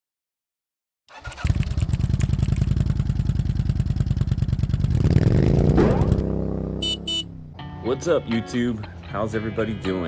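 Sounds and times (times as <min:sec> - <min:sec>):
motorcycle engine idling: 0:01.2 - 0:07.5.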